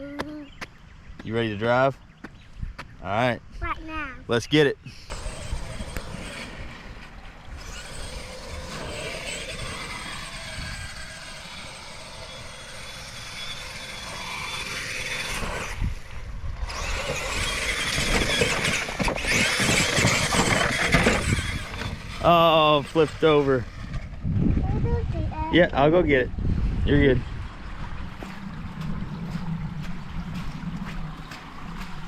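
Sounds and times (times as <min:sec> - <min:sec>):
toy truck motor whining: 0:05.1 - 0:24.2
tyres churning wet ground: 0:05.1 - 0:24.3, 0:26.9 - 0:32.0.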